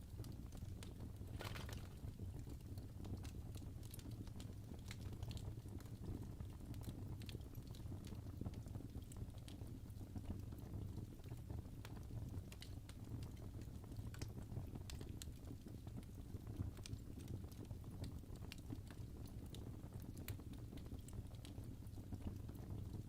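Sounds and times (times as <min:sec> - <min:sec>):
logs crackling and popping: 0:00.0 - 0:23.0
low rumble of flames: 0:00.0 - 0:23.0.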